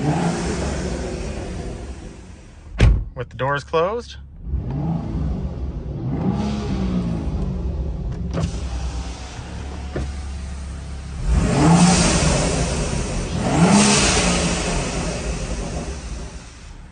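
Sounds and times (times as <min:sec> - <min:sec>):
car engine droning in cabin: 0:00.0 - 0:16.9
blow-off valve rush of air: 0:08.4 - 0:16.9.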